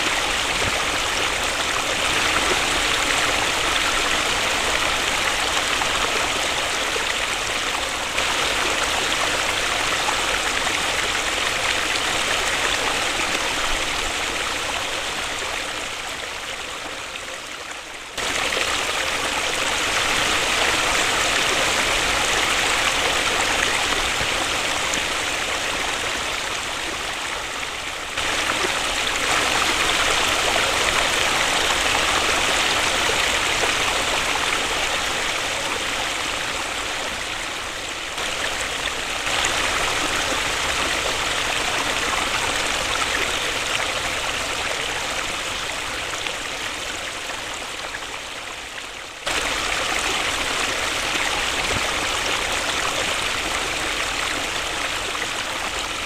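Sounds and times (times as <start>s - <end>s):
waterfall rushing: 18.2s - 48.0s, 49.3s - 56.0s.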